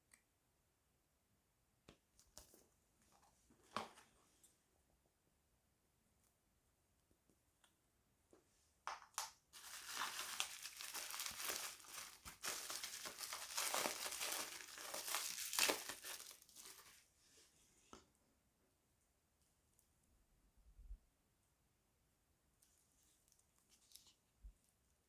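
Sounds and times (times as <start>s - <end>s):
plastic wrap crinkling: 9.6s - 17.0s.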